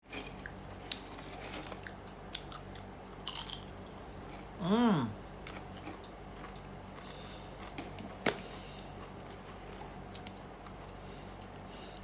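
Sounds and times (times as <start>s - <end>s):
steady low hum: 0.1s - 12.0s.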